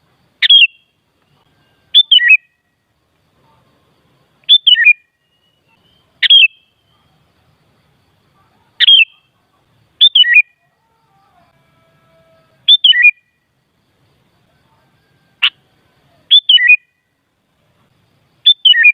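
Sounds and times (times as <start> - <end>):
bird whistled calls: 0.4 - 0.9, 1.6 - 2.6, 4.4 - 6.9, 8.8 - 9.3, 10.0 - 10.6, 12.7 - 13.3, 16.3 - 16.9, 18.4 - 18.9.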